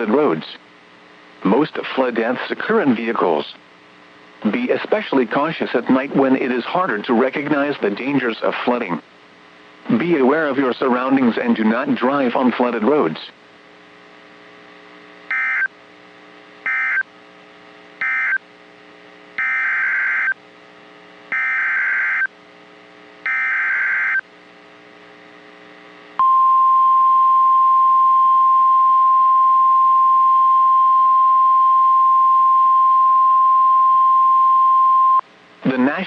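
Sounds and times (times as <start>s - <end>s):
faint steady hum: 0.0s - 36.0s
alert data bursts: 15.3s - 15.7s, 16.6s - 17.0s, 18.0s - 18.4s, 19.4s - 20.4s, 21.3s - 22.3s, 23.2s - 24.2s
high steady attention tone: 26.2s - 35.2s.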